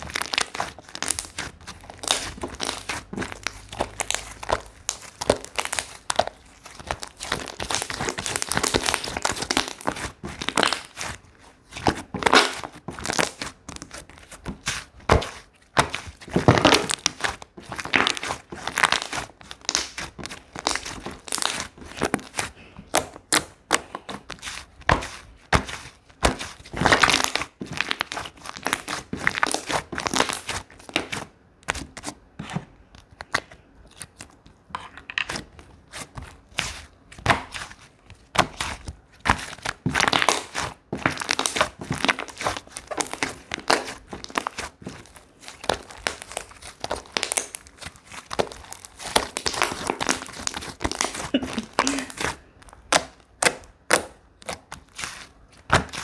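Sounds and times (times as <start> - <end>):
slime squeezed by hand: 0.0 - 11.2.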